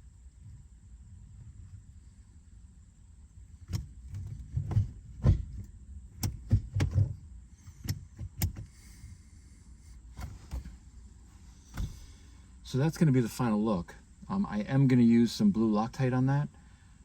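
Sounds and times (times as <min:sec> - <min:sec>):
gear shifter clicks and knocks: 0:03.5 - 0:08.8, 0:10.1 - 0:10.8, 0:11.6 - 0:12.2.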